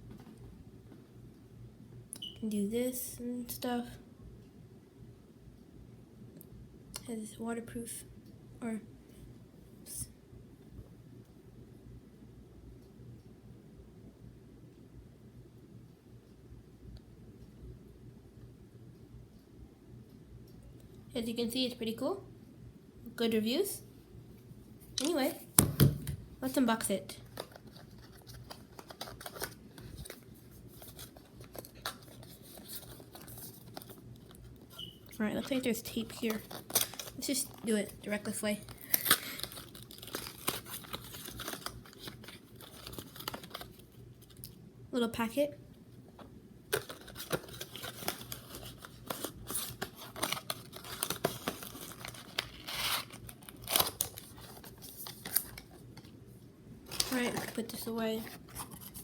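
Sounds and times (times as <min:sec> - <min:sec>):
plastic packaging crinkling: 0:27.2 - 0:44.5, 0:46.7 - 0:56.1, 0:56.8 - 0:59.0.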